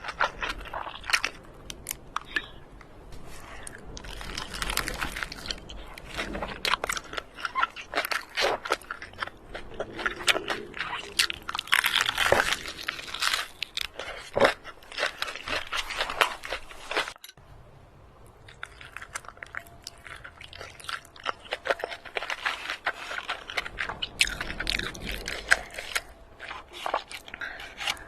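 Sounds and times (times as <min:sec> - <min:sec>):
crunchy chewing: 0:00.0 - 0:17.4, 0:18.2 - 0:28.0.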